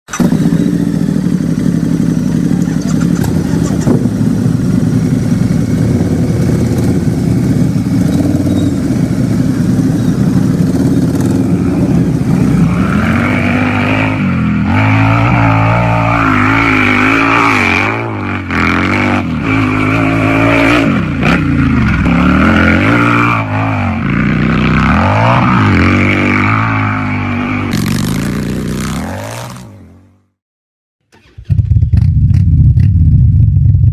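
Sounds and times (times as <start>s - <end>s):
motorcycle engine revving: 0.1s - 30.4s, 31.1s - 33.9s.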